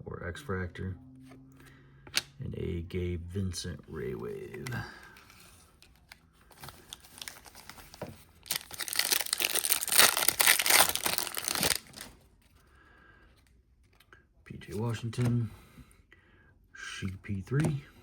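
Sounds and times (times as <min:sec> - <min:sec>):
foil wrapper crinkling: 0:06.5 - 0:12.2.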